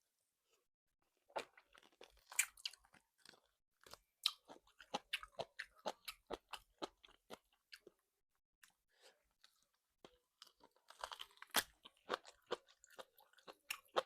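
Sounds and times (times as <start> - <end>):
person chewing: 1.3 - 8.0, 8.6 - 14.0.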